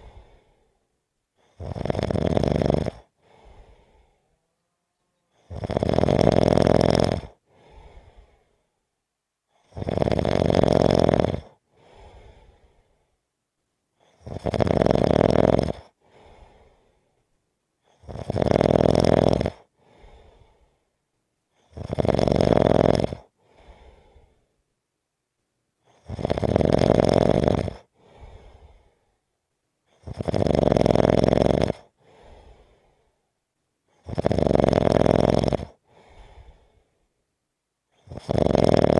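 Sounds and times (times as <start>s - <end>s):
faint short breath: 0.0s - 1.6s, 3.2s - 4.4s, 7.5s - 8.8s, 11.7s - 13.2s, 16.0s - 18.0s, 19.8s - 20.9s, 23.4s - 24.6s, 28.0s - 29.2s, 32.0s - 33.3s, 35.8s - 37.1s
loud snoring: 1.4s - 3.2s, 5.3s - 7.4s, 9.6s - 11.6s, 14.1s - 16.0s, 18.0s - 19.7s, 21.6s - 23.3s, 25.9s - 27.9s, 29.9s - 32.0s, 34.0s - 35.8s, 38.0s - 38.9s.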